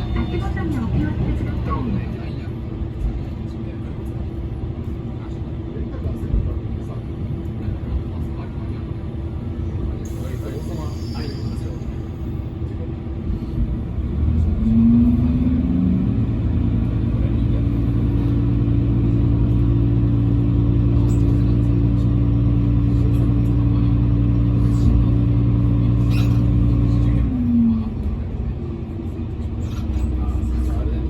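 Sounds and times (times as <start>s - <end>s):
diesel railcar engine revving: 6.2s - 31.0s.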